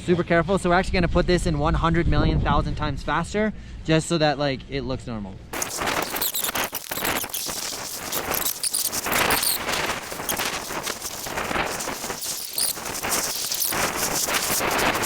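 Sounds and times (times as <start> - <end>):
sped-up wind and snowboard noise: 5.6 - 15.0.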